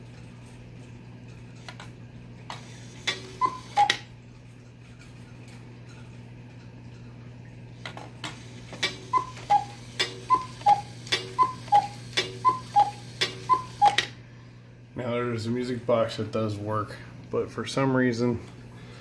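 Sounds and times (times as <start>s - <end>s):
clock works clicking: 2.5s - 4.1s, 8.2s - 14.1s
cuckoo clock calls: 3.0s - 4.1s, 8.8s - 14.1s.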